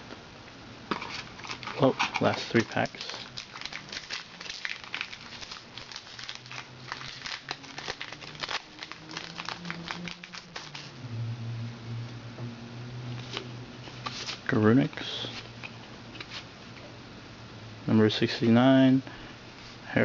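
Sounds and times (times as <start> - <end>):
faint low hum: 0.0 - 20.0
foil wrapper crinkling: 0.9 - 10.9.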